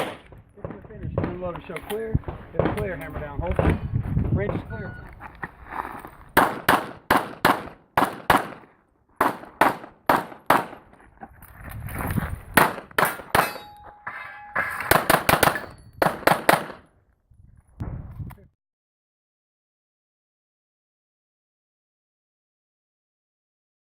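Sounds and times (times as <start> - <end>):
pistol shots: 0.0 - 1.4, 6.4 - 10.8, 14.9 - 16.8.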